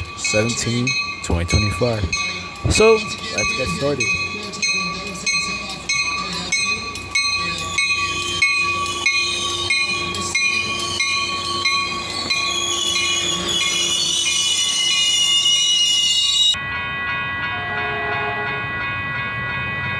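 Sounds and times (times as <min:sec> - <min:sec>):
train wheels clicking: 0:00.0 - 0:04.3
train wheels squealing: 0:04.7 - 0:16.6.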